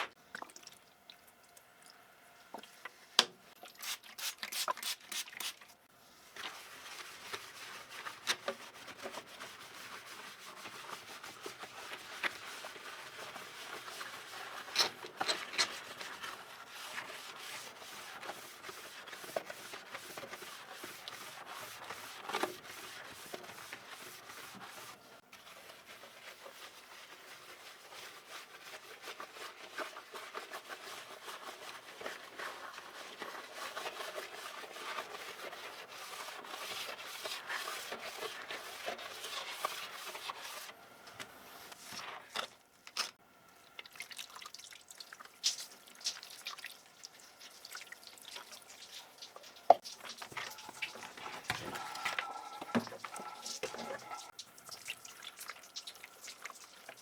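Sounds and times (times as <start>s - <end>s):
scrubbing keyboard: 6.6s - 40.7s, 50.0s - 54.3s.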